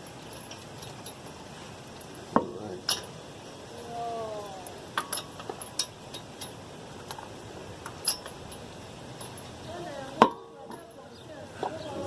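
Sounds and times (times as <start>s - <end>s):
metallic clicks of lug nuts and tools: 5.0s - 9.6s.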